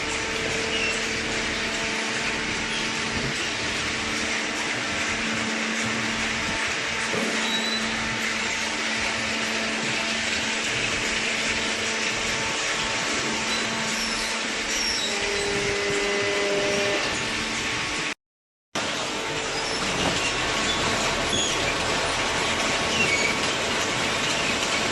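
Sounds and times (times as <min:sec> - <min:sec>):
baler motor humming and hissing: 0:00.0 - 0:18.1.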